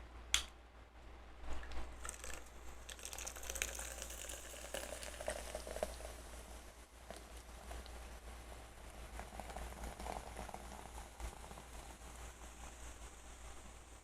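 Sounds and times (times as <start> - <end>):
food crackling on a plate: 1.5 - 6.2.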